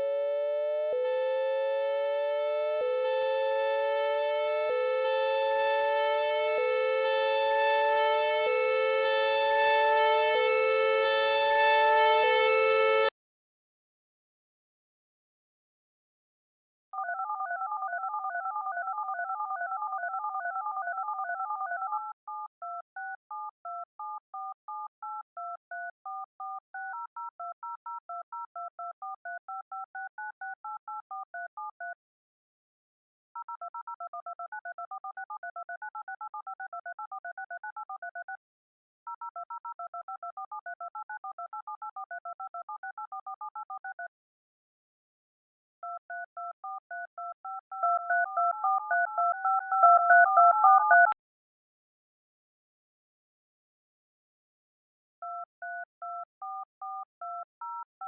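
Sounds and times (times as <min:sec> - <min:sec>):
electronic alarm tones: 0:00.0 - 0:13.1.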